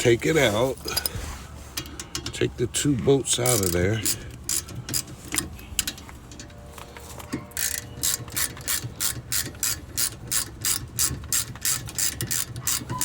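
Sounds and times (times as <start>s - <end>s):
hand ratchet clicking: 3.4s - 6.5s, 7.5s - 13.0s.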